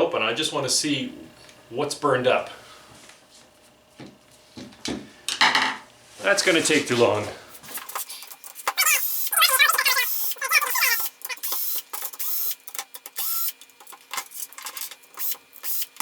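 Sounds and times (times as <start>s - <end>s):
screw squeaking: 8.6s - 13.5s
cordless drill driver whirring: 8.8s - 13.7s.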